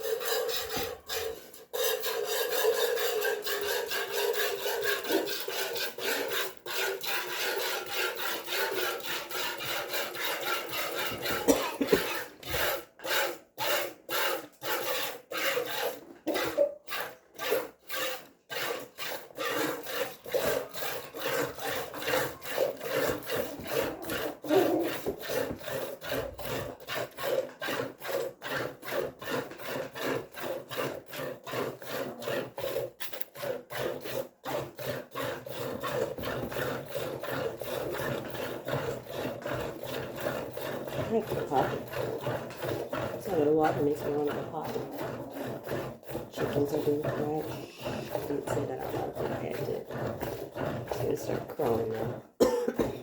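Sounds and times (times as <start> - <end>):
milk squirting into a pail: 0.0 - 53.0.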